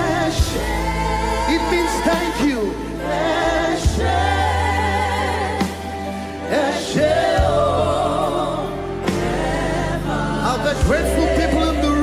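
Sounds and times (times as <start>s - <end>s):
keyboard: 0.0s - 12.0s
voices singing with vibrato: 0.0s - 12.0s
sustained bass line: 6.8s - 12.0s.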